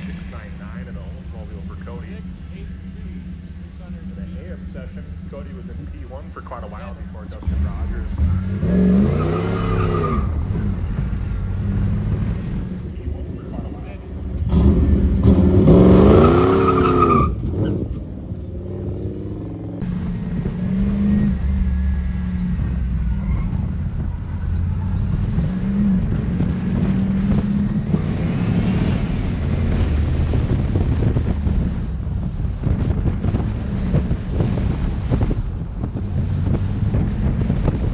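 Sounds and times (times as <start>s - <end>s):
car engine revving: 0.0s - 19.9s.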